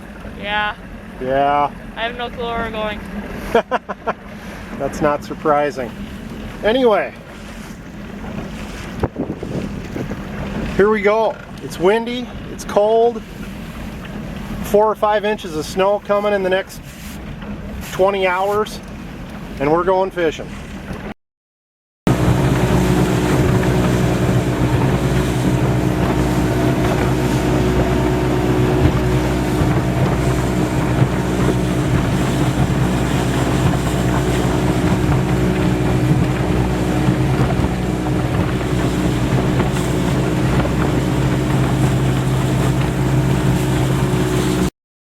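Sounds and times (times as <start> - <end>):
motorboat engine running: 0.0 - 21.1, 22.1 - 44.7
wind buffeting microphone: 7.2 - 12.6, 22.1 - 44.7.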